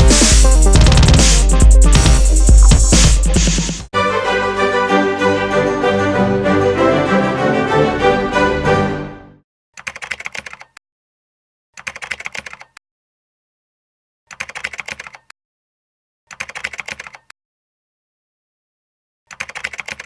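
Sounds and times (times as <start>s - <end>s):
music: 0.0s - 9.4s
rapid keyboard typing: 9.8s - 10.8s, 11.8s - 12.8s, 14.3s - 15.3s, 16.3s - 17.3s, 19.3s - 20.0s.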